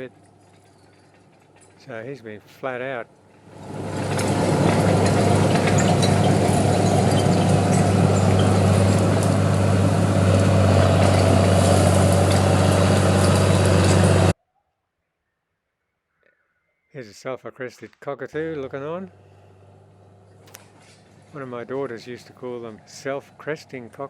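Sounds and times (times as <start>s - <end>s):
light clinks: 0.0s - 1.9s
diesel engine running: 3.3s - 14.4s, 18.6s - 24.0s.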